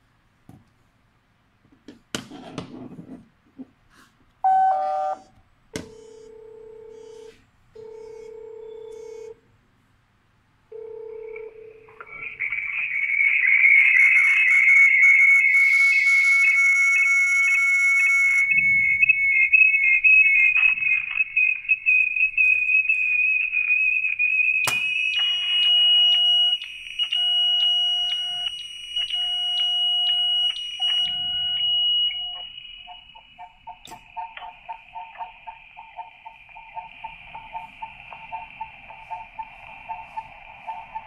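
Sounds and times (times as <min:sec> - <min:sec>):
high warbling beeping tone: 0:12.0 - 0:41.0
repeating electronic tone pattern: 0:12.2 - 0:21.5, 0:24.9 - 0:41.0.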